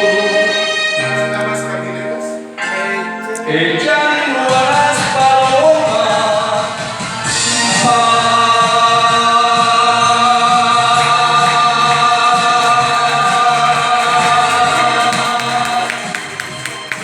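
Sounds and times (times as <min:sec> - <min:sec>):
man singing long note: 0:01.0 - 0:07.2
backing music: 0:01.0 - 0:17.0.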